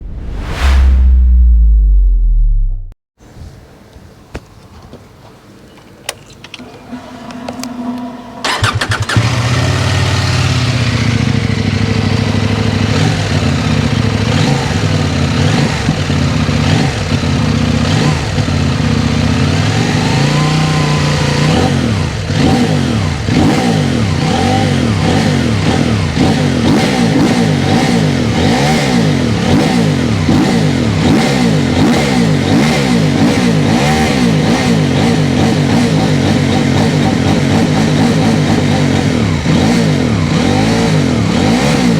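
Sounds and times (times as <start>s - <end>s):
motorcycle engine idling and revving: 8.4s - 41.9s.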